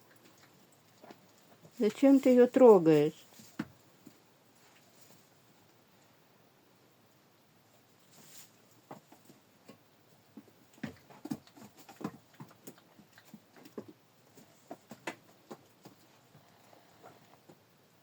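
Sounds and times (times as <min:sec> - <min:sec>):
goat hooves tapping: 0:08.8 - 0:16.4.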